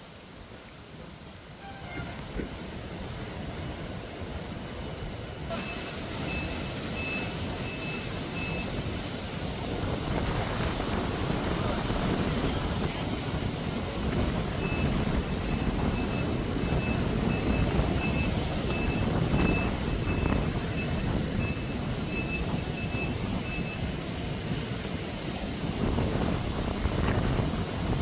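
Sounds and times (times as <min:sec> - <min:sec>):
wind on microphone: 0:00.0 - 0:28.0
vehicle reversing alarm beeping: 0:05.5 - 0:09.0, 0:14.4 - 0:24.0.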